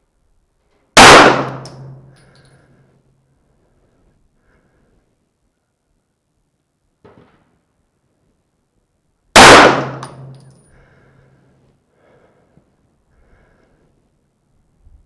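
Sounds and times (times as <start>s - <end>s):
pistol shot: 1.0s - 2.0s, 9.4s - 10.3s.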